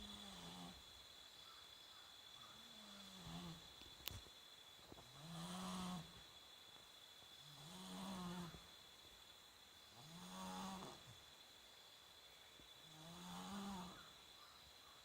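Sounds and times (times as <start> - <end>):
person snoring: 7.6 - 8.5, 10.0 - 11.0, 13.0 - 14.0.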